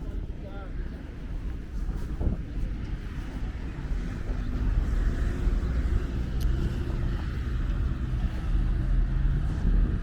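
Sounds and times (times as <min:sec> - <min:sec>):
low rumble of road traffic: 0:00.0 - 0:10.0
vehicle engine running: 0:03.1 - 0:10.0.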